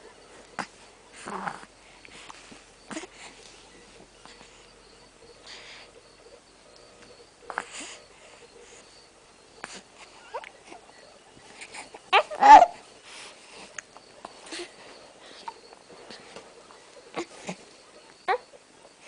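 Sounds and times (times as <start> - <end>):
child hiccuping: 12.1 - 12.8.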